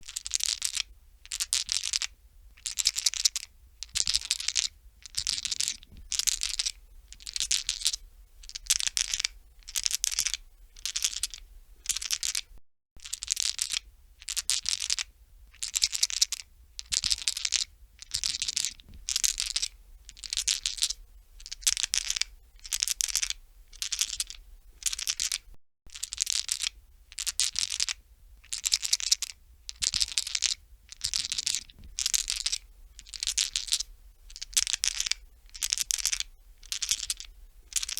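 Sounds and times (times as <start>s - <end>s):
dice rattling in hand: 22.0s - 25.4s.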